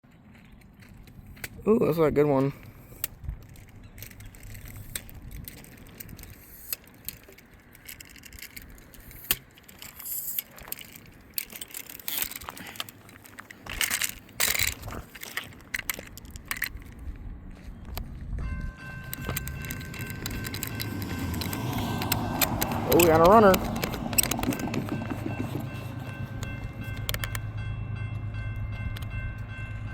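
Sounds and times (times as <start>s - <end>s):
train rumble: 2.4s - 29.9s.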